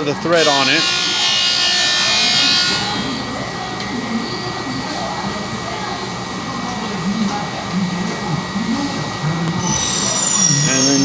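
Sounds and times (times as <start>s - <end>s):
faint high whistle: 9.6s - 11.0s.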